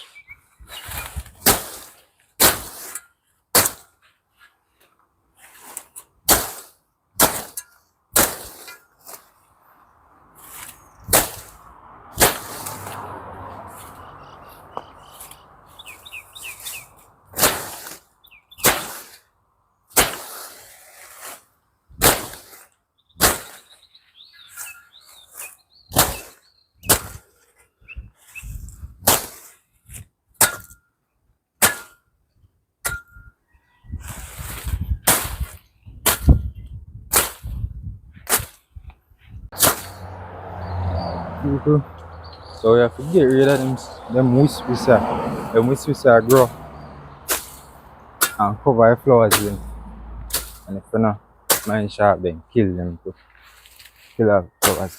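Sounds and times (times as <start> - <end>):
bird chirping: 0.0 - 1.2, 13.8 - 17.0, 18.1 - 18.7, 23.0 - 27.0, 40.6 - 44.9
hand tool swishing through weeds: 0.7 - 3.0, 5.4 - 9.4, 10.4 - 11.6, 12.2 - 13.0, 16.4 - 19.2, 20.0 - 23.7, 39.6 - 40.1, 47.3 - 48.4, 50.3 - 50.7.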